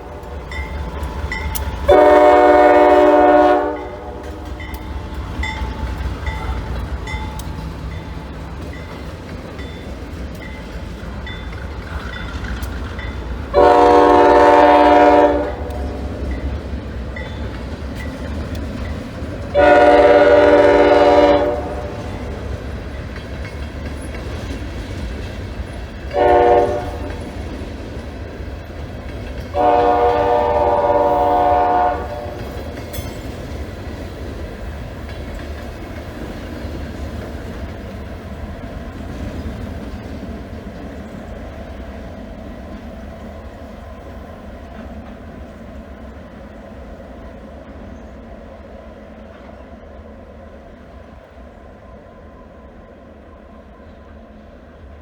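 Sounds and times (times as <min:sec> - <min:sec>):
train rumbling: 0:00.0 - 0:55.0
locomotive air horn blasts: 0:01.9 - 0:04.4, 0:13.5 - 0:16.1, 0:19.6 - 0:22.2, 0:26.1 - 0:27.2, 0:29.5 - 0:32.6.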